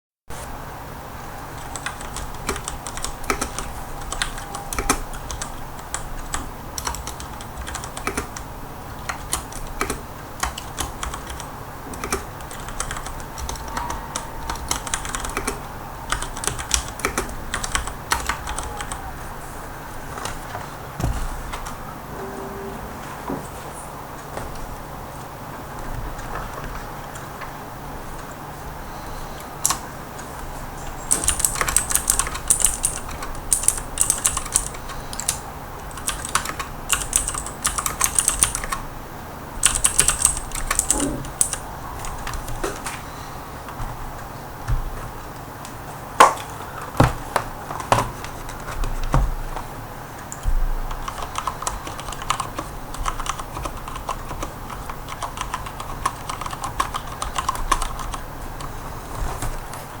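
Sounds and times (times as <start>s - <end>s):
mechanical keyboard typing: 1.5s - 19.1s, 31.0s - 38.8s, 39.6s - 42.8s, 50.3s - 59.9s.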